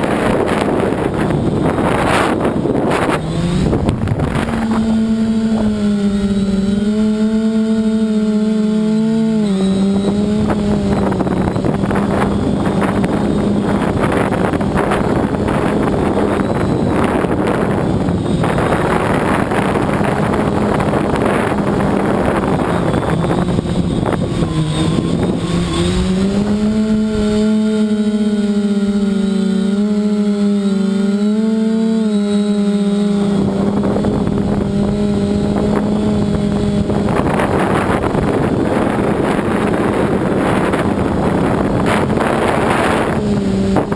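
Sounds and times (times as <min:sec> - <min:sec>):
wind buffeting microphone: 0:00.0 - 0:30.5, 0:32.6 - 0:43.9
drone propellers droning: 0:00.0 - 0:43.9.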